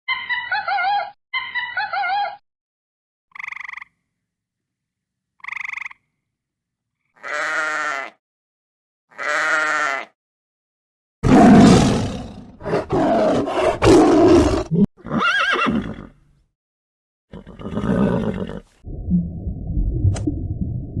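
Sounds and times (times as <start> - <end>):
horse neighing: 12.9 - 16.1, 17.3 - 18.8
muffled low sound: 18.8 - 21.0.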